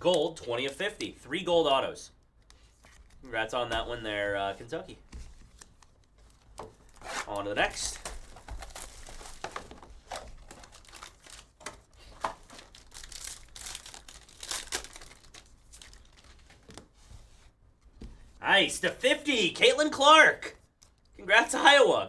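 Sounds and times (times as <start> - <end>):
packaging crinkling and tearing: 5.5 - 16.9.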